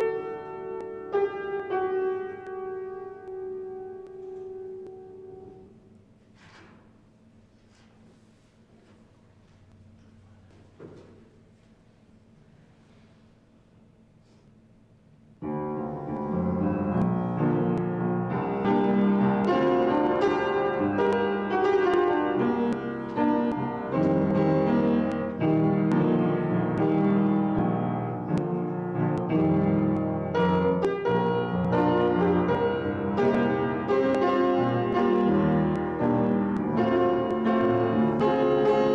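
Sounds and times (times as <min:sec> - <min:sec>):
piano music: 0:00.0 - 0:06.0, 0:15.4 - 0:38.9.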